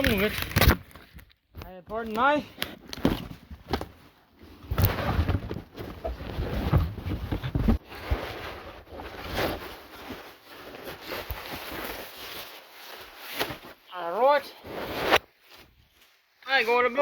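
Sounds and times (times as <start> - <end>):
packaging rustling: 2.6 - 13.9
knocks and bumps: 4.7 - 7.8.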